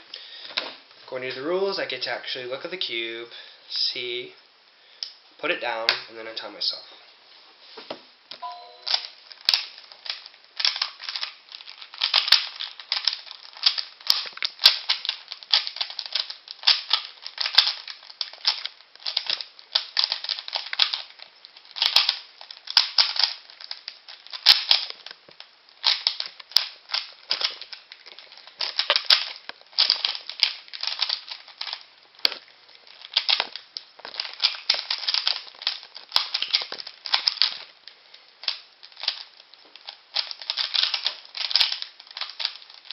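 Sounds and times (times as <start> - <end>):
puzzle cube layers clacking: 8.4 - 37.8, 38.4 - 42.9.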